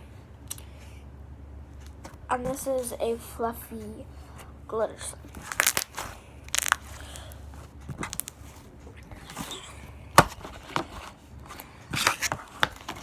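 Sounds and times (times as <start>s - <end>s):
slime squeezed by hand: 5.4s - 7.0s.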